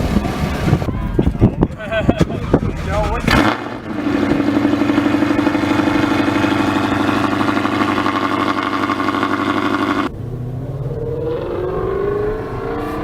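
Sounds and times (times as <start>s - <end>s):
car engine rising in pitch: 3.3s - 13.0s
sports car engine fast idle: 3.9s - 10.1s.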